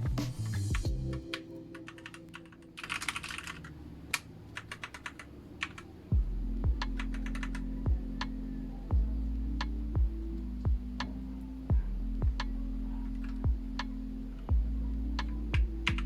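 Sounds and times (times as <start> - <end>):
music with deep bass beat: 0.0 - 1.4, 6.1 - 16.0
mechanical keyboard typing: 1.2 - 5.9, 6.8 - 8.4.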